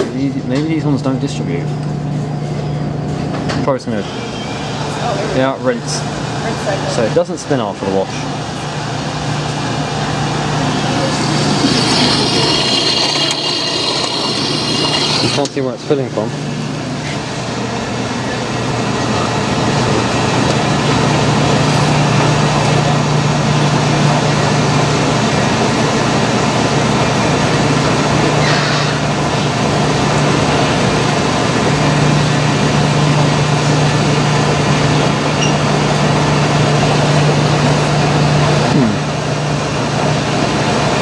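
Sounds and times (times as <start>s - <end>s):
water rushing into washer: 10.1s - 15.6s.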